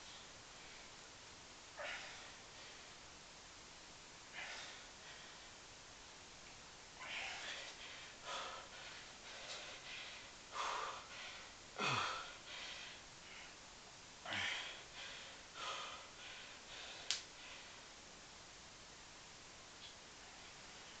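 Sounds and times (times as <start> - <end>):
man breathing hard: 4.3 - 5.6, 7.0 - 13.6, 14.2 - 17.9.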